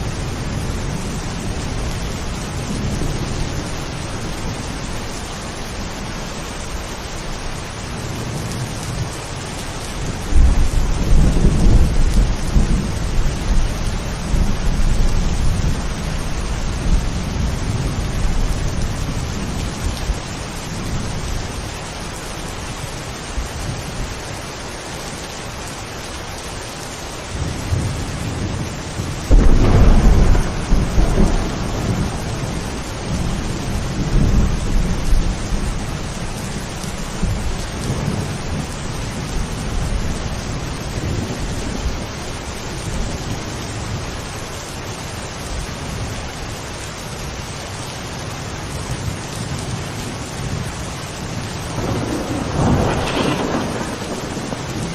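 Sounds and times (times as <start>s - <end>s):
steady rain: 0.0s - 54.9s
rolling thunder: 10.0s - 21.6s, 27.4s - 42.3s, 50.1s - 54.9s.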